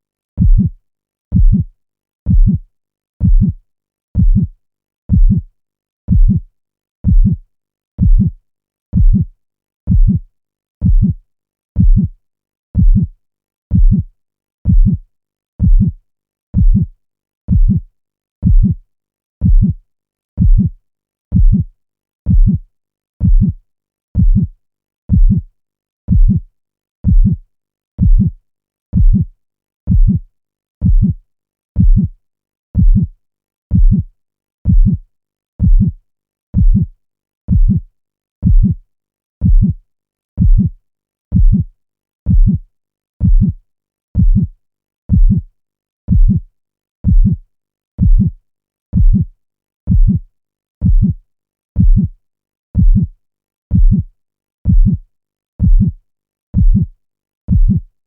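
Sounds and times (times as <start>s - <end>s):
heartbeat double thump: 0.4s - 0.7s, 1.3s - 1.7s, 2.3s - 2.6s, 3.2s - 3.6s, 4.2s - 4.5s, 5.1s - 5.4s, 6.1s - 6.4s, 7.0s - 7.4s, 8.0s - 8.3s, 9.0s - 9.2s, 9.9s - 10.2s, 10.8s - 11.2s, 12.8s - 13.1s, 13.7s - 14.0s, 14.7s - 15.0s, 15.6s - 16.0s, 16.6s - 16.9s, 17.5s - 17.8s, 18.4s - 18.8s, 19.4s - 19.8s, 20.4s - 20.7s, 21.3s - 21.6s, 22.3s - 22.6s, 23.2s - 23.6s, 24.2s - 24.5s, 25.1s - 25.4s, 26.1s - 26.4s, 27.0s - 27.4s, 28.0s - 28.3s, 29.0s - 29.2s, 29.9s - 30.2s, 30.8s - 31.2s, 31.8s - 32.1s, 32.8s - 33.1s, 33.7s - 34.0s, 34.7s - 35.0s, 35.6s - 36.0s, 36.6s - 36.8s, 37.5s - 37.8s, 38.4s - 38.8s, 39.4s - 39.7s, 40.4s - 40.7s, 41.3s - 41.6s, 42.3s - 42.6s, 43.2s - 43.6s, 44.2s - 44.5s, 45.1s - 45.4s, 46.1s - 46.4s, 47.0s - 47.4s, 48.0s - 48.3s, 49.0s - 49.2s, 49.9s - 50.2s, 50.8s - 51.1s, 51.8s - 52.1s, 52.8s - 53.1s, 53.7s - 54.0s, 54.7s - 55.0s, 55.6s - 55.9s, 56.6s - 56.8s, 57.5s - 57.8s.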